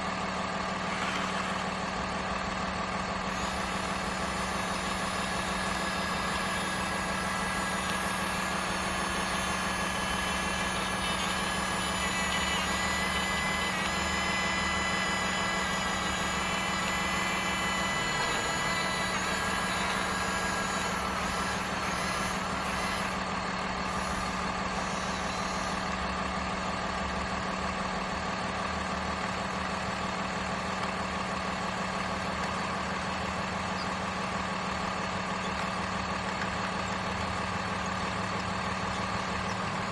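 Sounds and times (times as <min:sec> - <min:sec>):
toy engine drone: 0:00.8 - 0:02.0, 0:03.3 - 0:23.2, 0:23.8 - 0:26.0.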